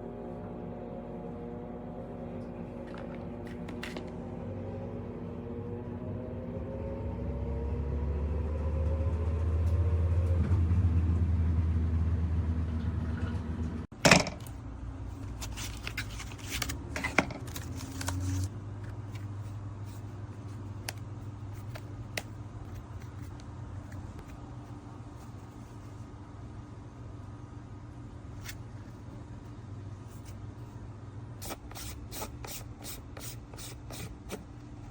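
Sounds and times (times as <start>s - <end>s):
low engine rumble: 0.0s - 13.9s
low hum: 0.0s - 31.4s.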